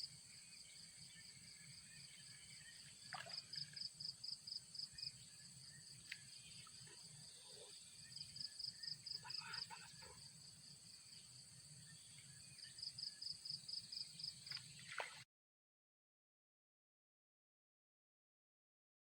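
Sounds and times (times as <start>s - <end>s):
insect chirping: 0.0s - 15.1s.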